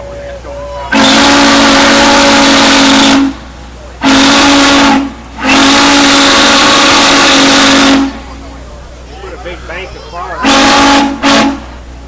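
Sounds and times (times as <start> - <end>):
steam locomotive whistle: 0.0 - 8.3, 10.4 - 12.0
steam hissing: 0.0 - 12.0.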